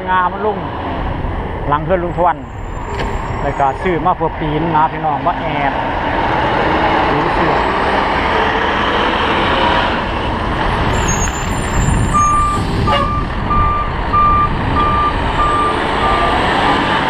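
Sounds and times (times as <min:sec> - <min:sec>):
truck reversing alarm beeping: 0:11.0 - 0:16.7.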